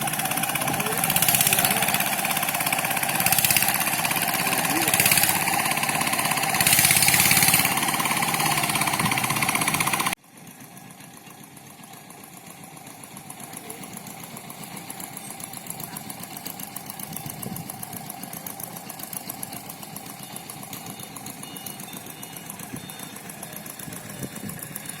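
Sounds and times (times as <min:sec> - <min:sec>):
engine running with fast ticking: 0:00.0 - 0:25.0
small engine rushing noise: 0:00.0 - 0:25.0.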